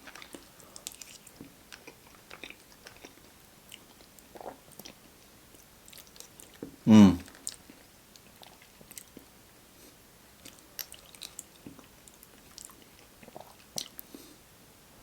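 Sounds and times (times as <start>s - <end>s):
person chewing crunchy food: 0.0s - 5.2s, 10.4s - 14.2s.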